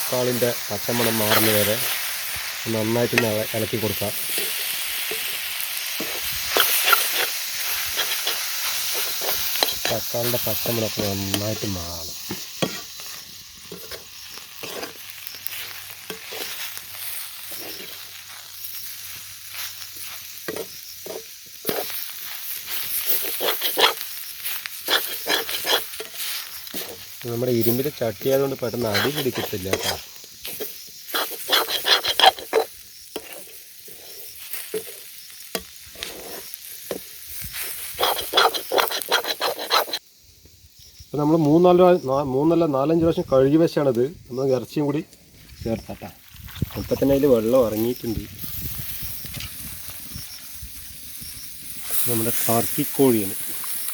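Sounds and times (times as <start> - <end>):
spatula scraping a pan: 0.0 - 40.0
masala sizzling in a pan: 0.0 - 53.9.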